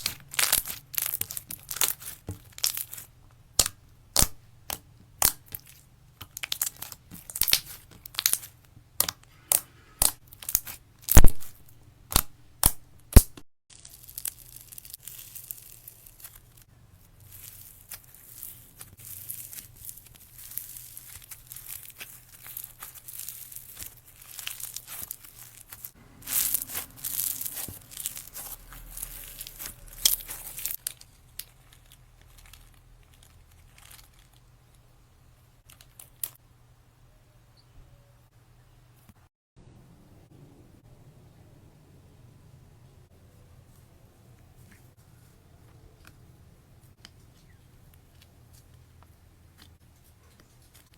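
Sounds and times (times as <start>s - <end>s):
slime crackling and popping: 0.0s - 34.4s.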